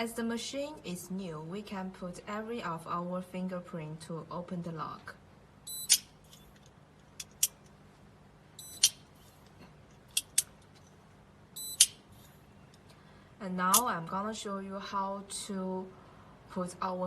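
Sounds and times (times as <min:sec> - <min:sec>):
padlock beeping: 0:05.6 - 0:06.1, 0:08.6 - 0:09.0, 0:11.6 - 0:12.0.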